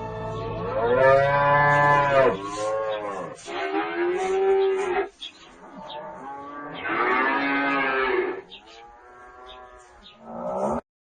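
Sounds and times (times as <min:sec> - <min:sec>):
cow mooing: 0:00.6 - 0:05.1, 0:05.8 - 0:10.8.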